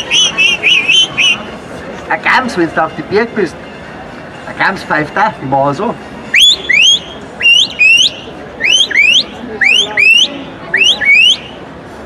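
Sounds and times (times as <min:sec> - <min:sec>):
short rising whistle notes: 0:06.3 - 0:11.6.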